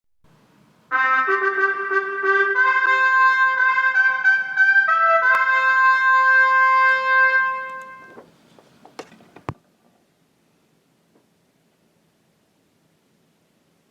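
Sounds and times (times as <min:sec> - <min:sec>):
brass melody: 0:00.9 - 0:08.2.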